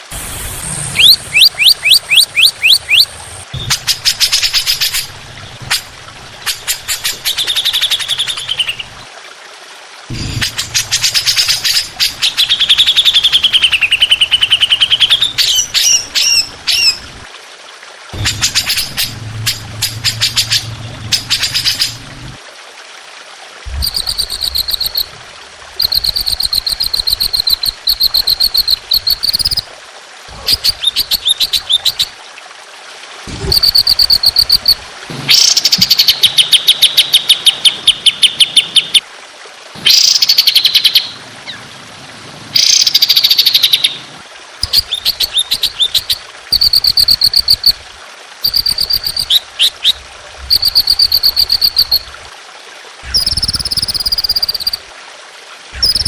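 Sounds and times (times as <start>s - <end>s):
songbird high trilled notes: 0.3s - 5.1s, 23.7s - 25.2s, 25.8s - 29.6s, 33.5s - 39.0s.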